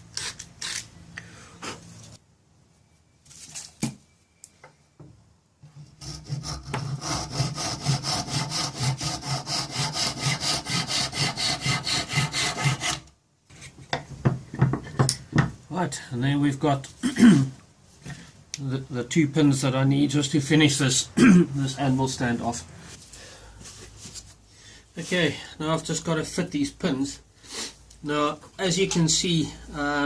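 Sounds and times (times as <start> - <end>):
sanding strokes on wood: 6.0 - 13.0.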